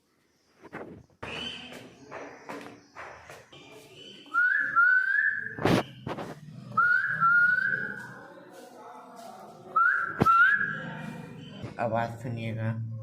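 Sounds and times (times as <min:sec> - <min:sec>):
bird whistling: 0:01.2 - 0:01.8.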